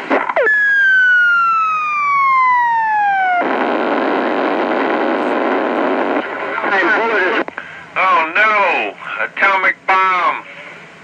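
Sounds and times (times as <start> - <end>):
radio noise hiss: 0.0 - 0.5, 3.0 - 11.0
falling bomb whistle: 0.4 - 3.5.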